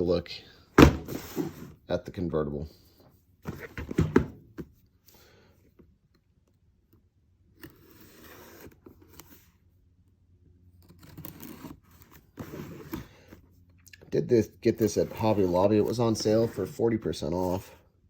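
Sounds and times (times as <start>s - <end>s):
cardboard boxes scraping and knocking: 0.8s - 1.8s, 3.4s - 4.6s, 11.0s - 13.4s, 14.7s - 17.7s
cardboard rustling: 0.8s - 1.8s, 14.7s - 17.7s.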